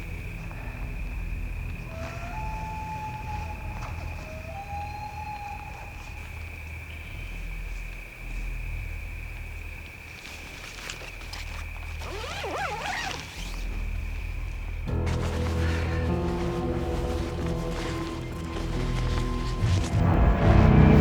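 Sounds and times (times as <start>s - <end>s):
fast squeaky chirps: 12.0s - 13.7s
low hum: 14.0s - 21.0s.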